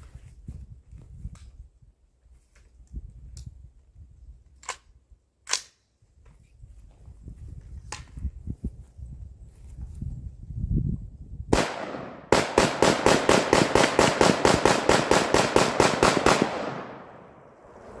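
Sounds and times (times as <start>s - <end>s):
gunshot echo: 11.5s - 17.5s
rifle shots: 11.5s - 17.5s.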